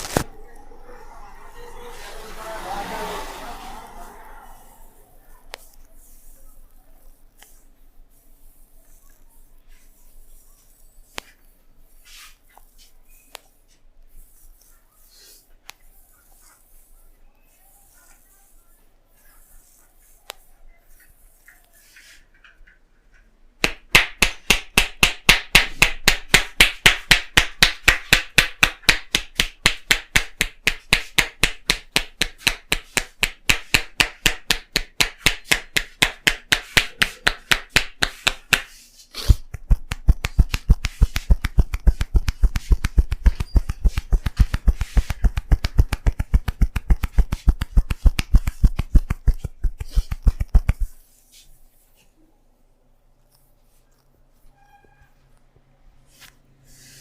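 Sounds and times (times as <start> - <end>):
hands slapping head rhythmically: 23.6 - 51.0.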